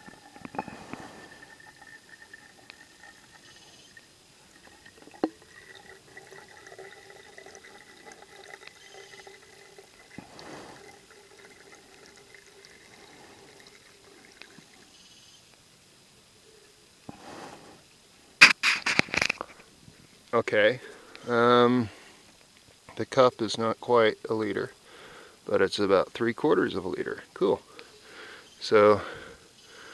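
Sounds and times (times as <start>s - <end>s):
water trickling into bottle: 0.0s - 15.0s
sharp knock: 18.4s - 19.1s.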